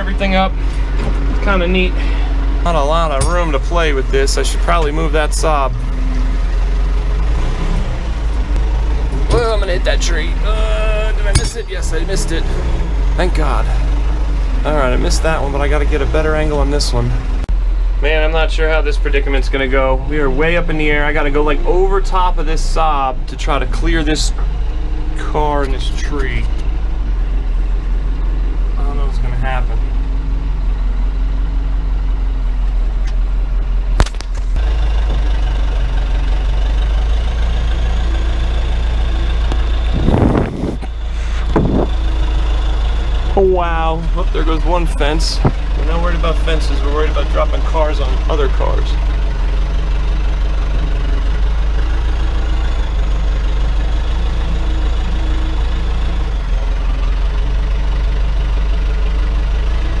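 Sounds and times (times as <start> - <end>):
diesel engine running: 0.0 - 60.0
sharp crack: 34.0 - 34.6.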